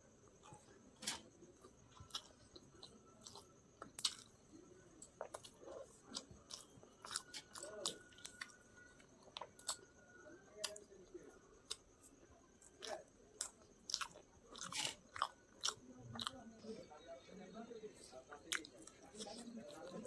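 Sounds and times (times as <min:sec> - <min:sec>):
person chewing: 0:01.6 - 0:04.4, 0:05.0 - 0:09.9, 0:11.6 - 0:16.7, 0:18.3 - 0:20.0.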